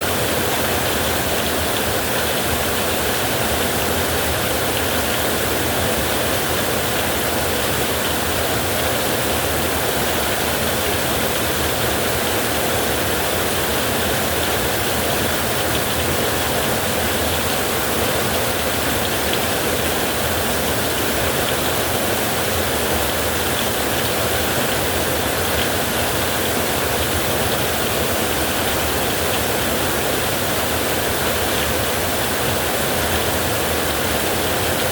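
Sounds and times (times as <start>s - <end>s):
creek water running: 0.0s - 34.9s.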